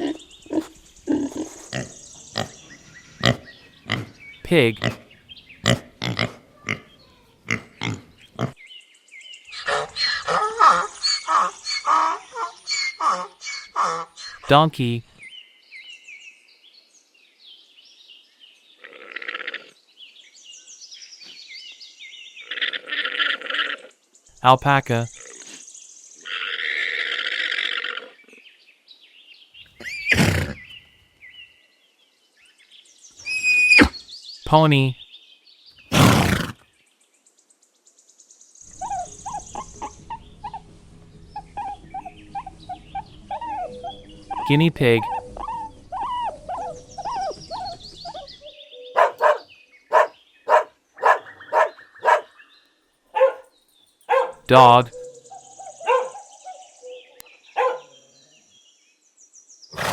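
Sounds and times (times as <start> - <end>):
alpaca calls: 9.6 - 15.0, 33.2 - 34.9, 38.8 - 40.7, 41.3 - 48.4, 49.0 - 52.3
guinea pig squeaking: 38.8 - 40.6, 41.4 - 48.3.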